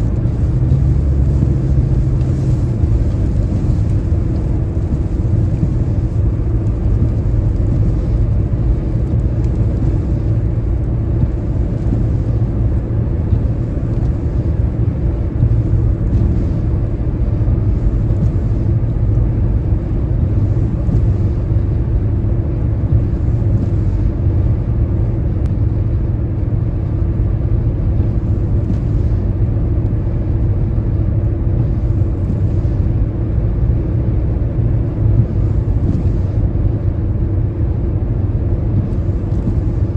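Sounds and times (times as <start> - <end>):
faint tyre hiss: 0.0 - 21.8
road and tyre rumble: 0.0 - 39.9.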